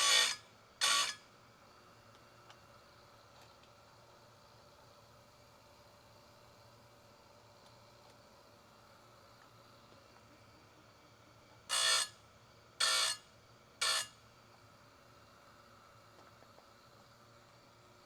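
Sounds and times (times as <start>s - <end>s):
grinding wheel on chain: 0.0s - 1.2s, 11.7s - 12.1s.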